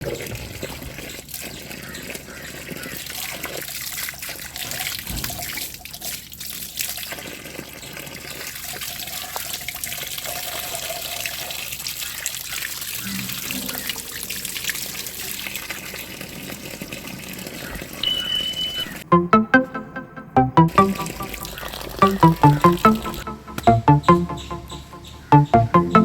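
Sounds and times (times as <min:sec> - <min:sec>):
small water splashes: 0:00.2 - 0:18.0
water running and trickling: 0:00.4 - 0:18.0.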